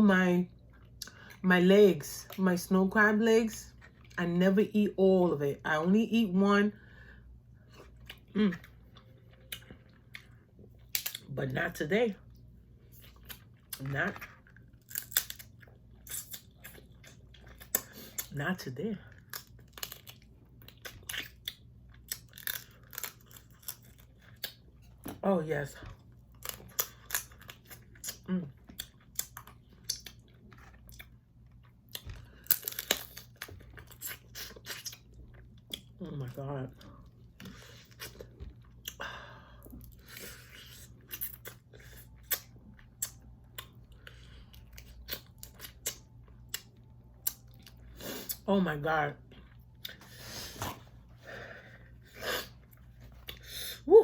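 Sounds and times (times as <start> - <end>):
person chewing crab legs: 7.2 - 11.2, 12.3 - 18.3, 19.1 - 25.1, 25.8 - 36.0, 36.8 - 48.4, 49.2 - 53.9.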